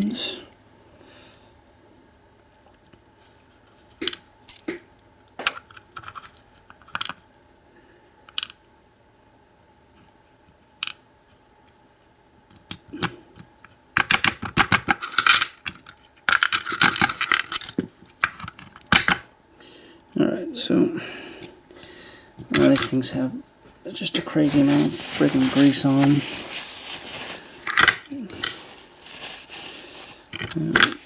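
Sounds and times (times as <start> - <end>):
rapid rattling of pins: 24.4 - 31.0.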